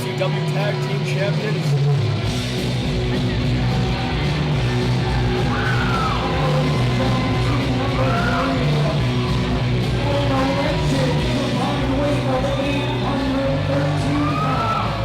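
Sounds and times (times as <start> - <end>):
hard rock music: 0.0 - 15.0
low bass line: 1.9 - 15.0
person yelling and singing: 5.5 - 15.0.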